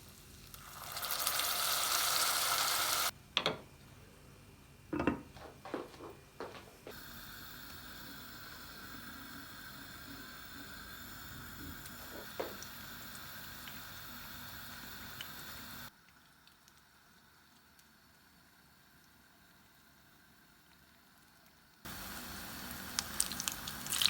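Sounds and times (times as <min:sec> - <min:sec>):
steady hiss: 0:06.9 - 0:16.0, 0:17.5 - 0:24.0.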